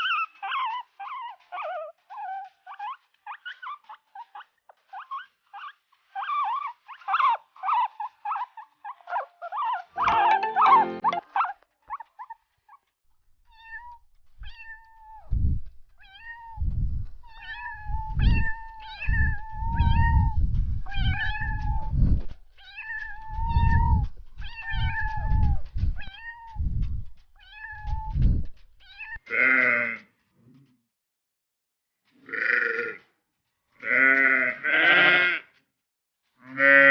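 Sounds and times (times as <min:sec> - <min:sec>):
cat meowing: 0:13.5 - 0:15.3, 0:16.0 - 0:16.6, 0:17.3 - 0:22.0, 0:22.6 - 0:26.6, 0:27.4 - 0:28.2.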